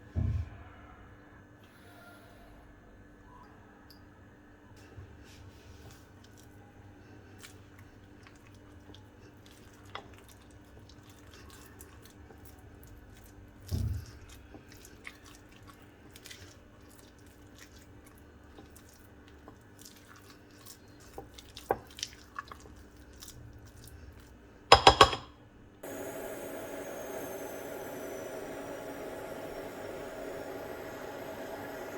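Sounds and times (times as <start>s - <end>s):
kitchen clicks and taps: 24.7s - 25.3s.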